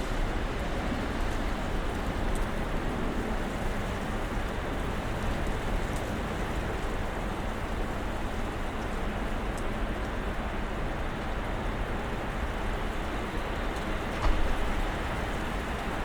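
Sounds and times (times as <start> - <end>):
snowstorm rumbling wash: 10.9 - 16.0.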